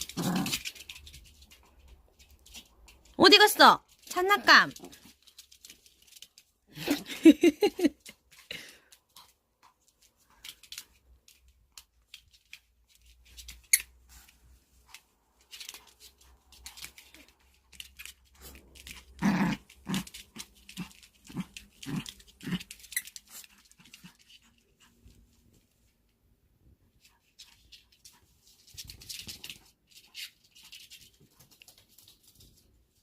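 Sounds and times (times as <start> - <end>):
puppy growling: 0.0 - 0.9, 18.4 - 24.2.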